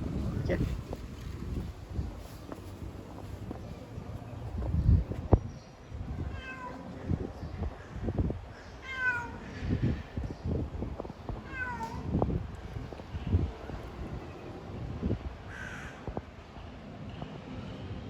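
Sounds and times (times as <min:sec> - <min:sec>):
cat meowing: 0:06.2 - 0:06.9, 0:08.8 - 0:09.6, 0:11.4 - 0:12.1.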